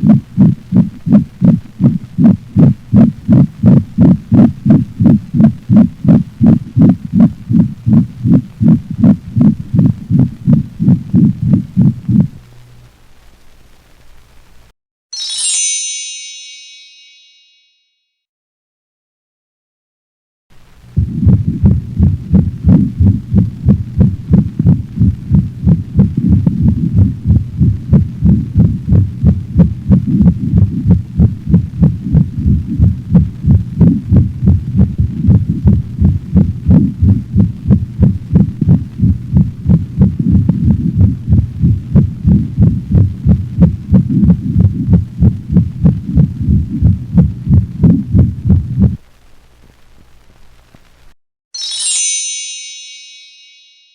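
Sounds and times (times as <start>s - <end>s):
dog heartbeat through stethoscope: 0.0s - 12.4s, 21.0s - 49.0s
heart murmur: 0.0s - 12.4s, 20.9s - 49.0s.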